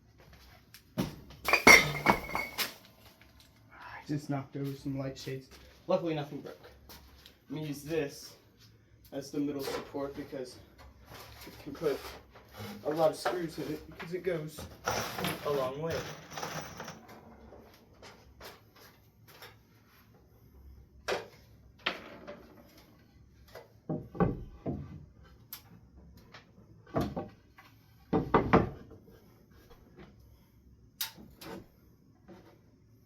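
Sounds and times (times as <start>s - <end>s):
objects being handled: 1.5s - 3.6s.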